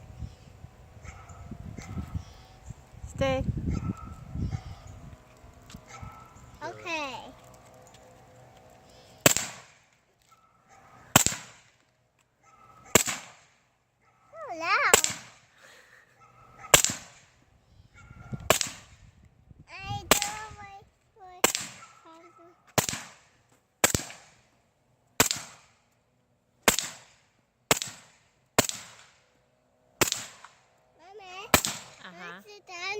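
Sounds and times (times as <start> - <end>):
suppressed rifle shots: 9.2 - 9.8, 11.1 - 11.7, 12.9 - 13.5, 23.8 - 24.3, 25.2 - 25.7, 26.6 - 29.2, 30.0 - 30.6.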